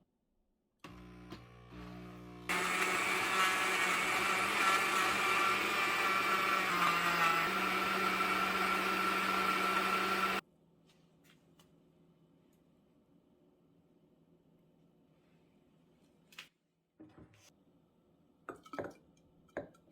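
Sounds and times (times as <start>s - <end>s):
electric blender motor running: 0.9s - 10.4s.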